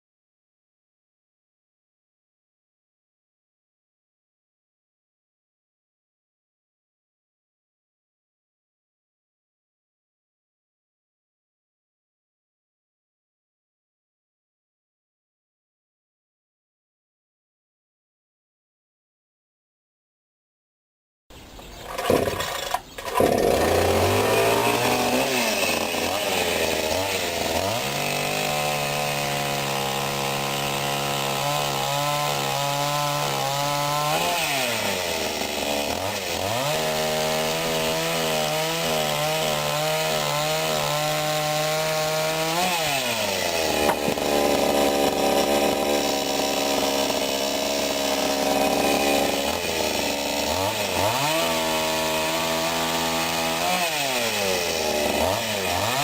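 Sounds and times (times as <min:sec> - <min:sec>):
chainsaw sawing firewood: 0:21.7 - 0:56.0.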